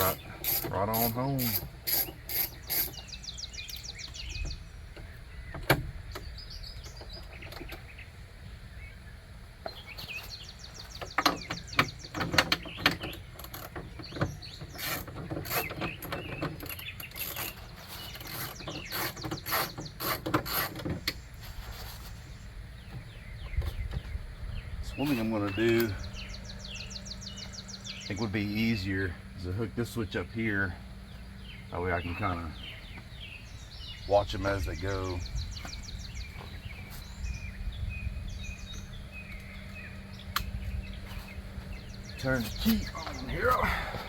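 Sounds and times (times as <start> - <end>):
ratchet clicking: 0.4 - 3.0.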